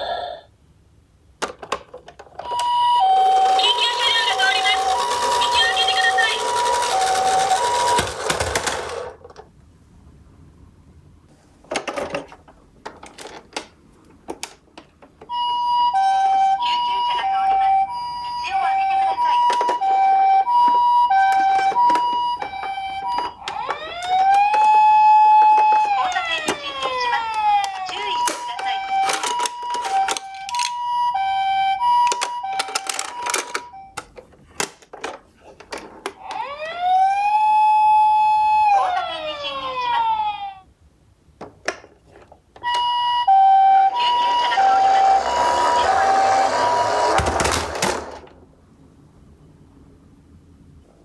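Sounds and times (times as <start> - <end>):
toy siren wailing: 2.4 - 9.0, 15.3 - 33.9, 36.2 - 40.6, 42.6 - 47.4
toy two-tone siren: 2.4 - 9.0, 15.3 - 34.0, 36.3 - 40.4, 42.6 - 47.3.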